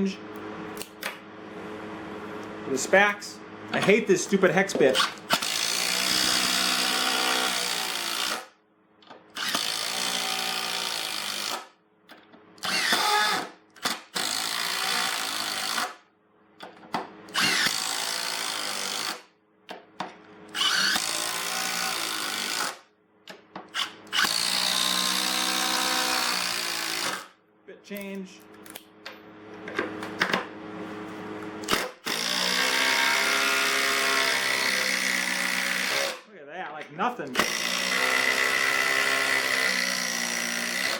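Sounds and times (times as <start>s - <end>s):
impact driver driving screws: 5.0s - 8.5s, 9.3s - 11.7s, 12.6s - 16.0s, 17.3s - 19.2s, 20.5s - 22.8s, 23.7s - 27.3s, 31.6s - 36.2s.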